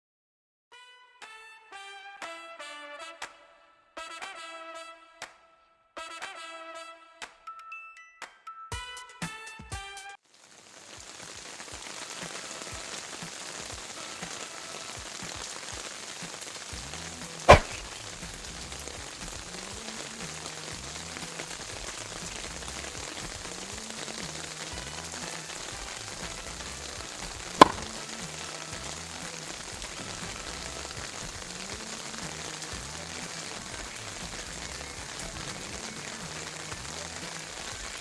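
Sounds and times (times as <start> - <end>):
heavy rain on leaves: 10.2 - 38.0
sharp loud knocks: 27.6 - 27.9.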